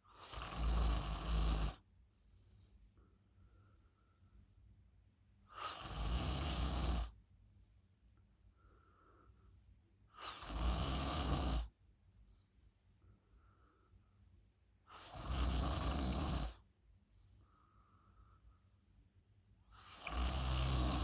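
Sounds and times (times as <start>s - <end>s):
person snoring loudly: 15.1s - 16.6s, 20.0s - 21.0s.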